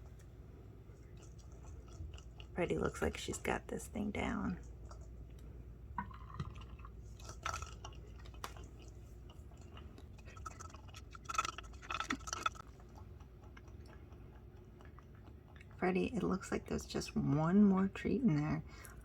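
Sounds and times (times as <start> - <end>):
cat chewing: 0.0 - 3.1, 4.6 - 16.3.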